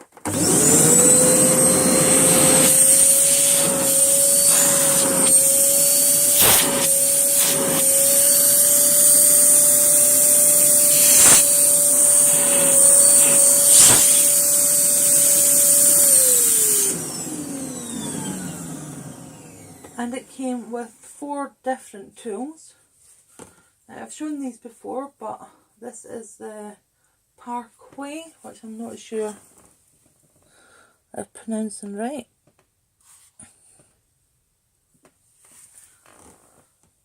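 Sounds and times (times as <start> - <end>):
vacuum cleaner motor whine: 0.1 - 20.0.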